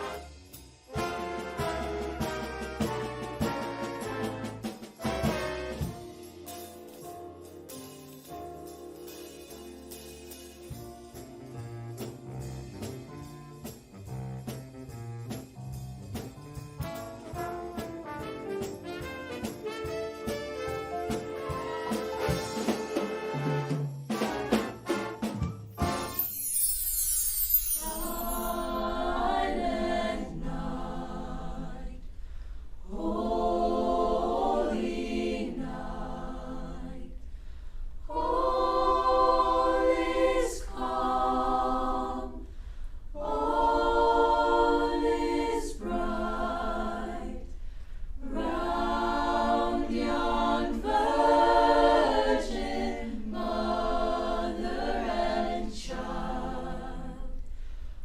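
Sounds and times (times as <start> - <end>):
choir singing a cappella: 0.0 - 6.7, 17.3 - 24.8, 27.6 - 37.3, 38.0 - 57.8
singers breathing: 32.0 - 32.8, 37.2 - 38.0, 42.4 - 43.1, 47.5 - 48.2, 57.4 - 58.0.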